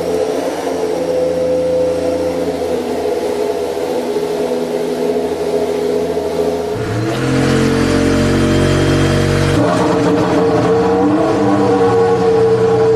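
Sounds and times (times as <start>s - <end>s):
racing car engine idling and revving: 6.7s - 12.9s.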